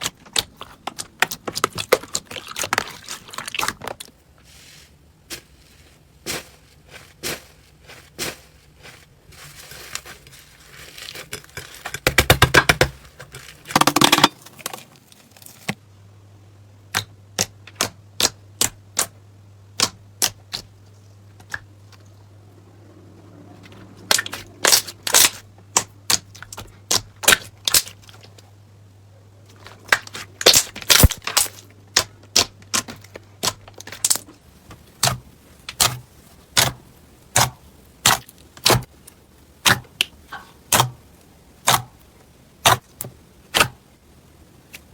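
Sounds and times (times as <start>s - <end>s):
slime crackling: 0.0s - 15.7s, 29.6s - 43.9s.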